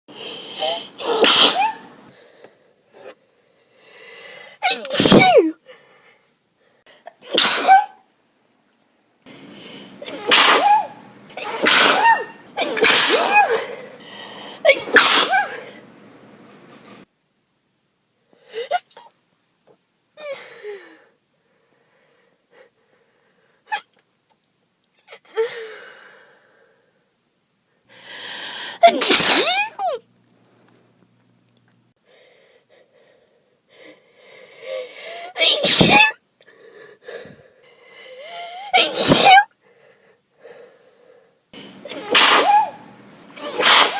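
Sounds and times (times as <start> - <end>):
person sneezing: 0.5 - 1.9, 4.6 - 5.6, 7.1 - 8.0, 10.0 - 14.0, 14.6 - 15.8, 28.7 - 30.0, 34.7 - 36.2, 38.3 - 39.6, 41.6 - 43.9
drawn-in breath: 2.1 - 4.6.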